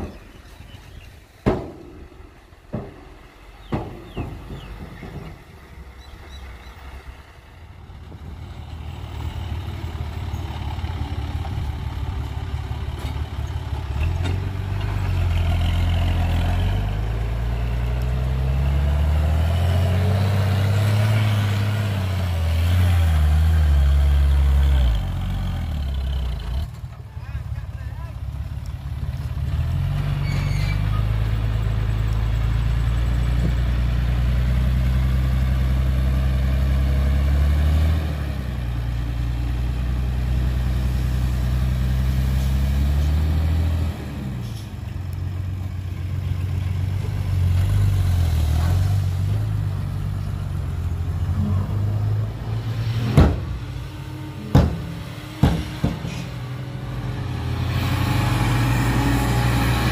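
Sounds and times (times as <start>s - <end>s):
heavy diesel machinery engine: 0.0s - 59.9s
sharp bangs: 1.4s - 5.6s, 52.6s - 56.6s.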